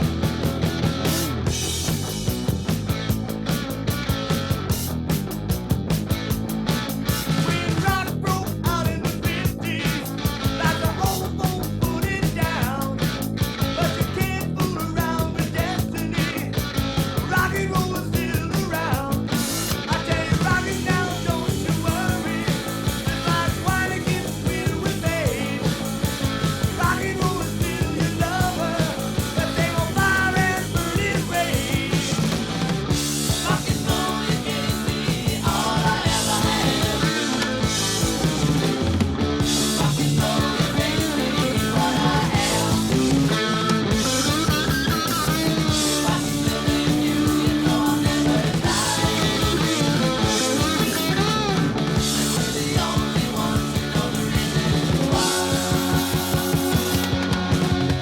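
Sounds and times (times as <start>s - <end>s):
drums: 0.0s - 58.0s
electric bass: 0.0s - 58.0s
guitar melodic lines: 27.4s - 58.0s.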